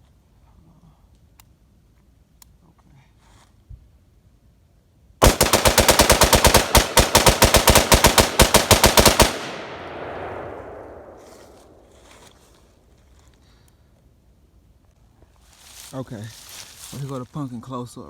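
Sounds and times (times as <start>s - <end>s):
rifle firing rapid shots: 5.2s - 11.8s
gunshot echo: 5.2s - 12.0s.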